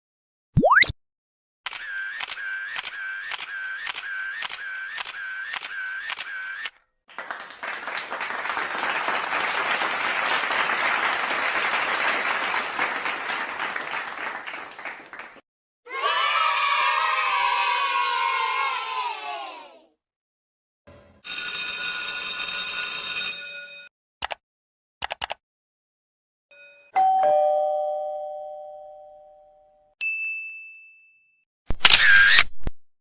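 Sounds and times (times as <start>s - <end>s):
camera shutter clicking: 1.7s - 6.7s, 31.8s - 32.5s
crowd applauding: 7.1s - 15.4s.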